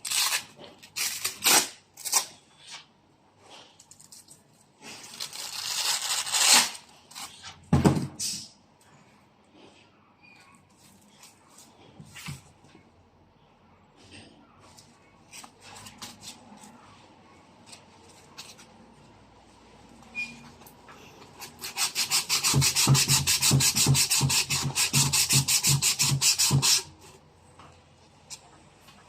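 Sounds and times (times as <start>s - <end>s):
sanding block scraping: 21.5s - 26.9s.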